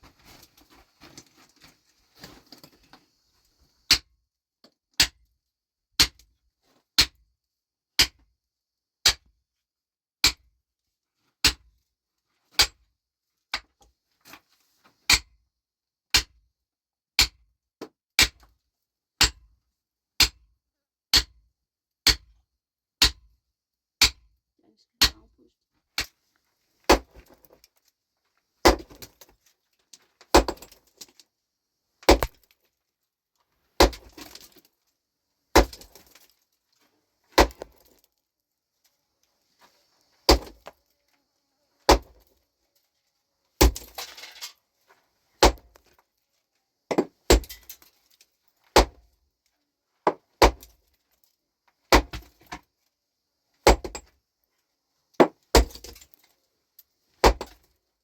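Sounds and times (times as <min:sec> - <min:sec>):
heavy blows breaking rock: 0:28.6 - 0:29.3, 0:30.3 - 0:31.1, 0:32.1 - 0:32.6, 0:33.8 - 0:34.7, 0:35.5 - 0:36.3, 0:37.3 - 0:38.0, 0:40.3 - 0:40.8, 0:43.6 - 0:44.4
falling stone chips rattling: 0:43.7 - 0:44.5.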